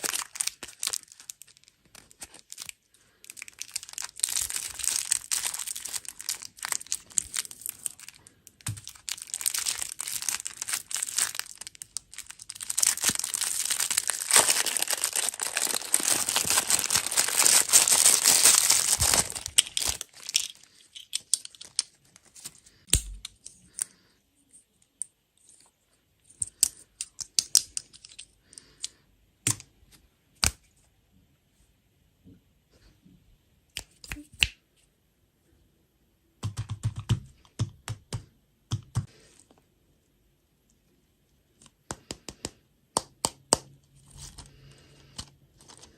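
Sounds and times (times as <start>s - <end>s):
plastic wrappers crinkling: 0.0s - 22.8s, 44.1s - 45.9s.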